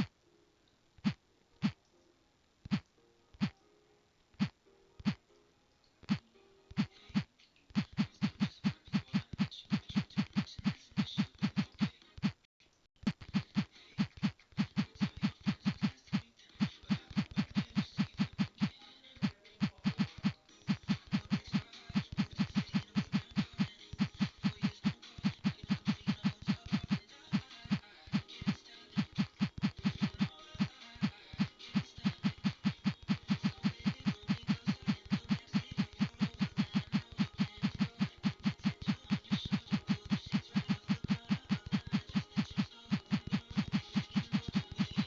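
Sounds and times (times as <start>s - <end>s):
low thumps with clicks: 32.0s - 45.0s.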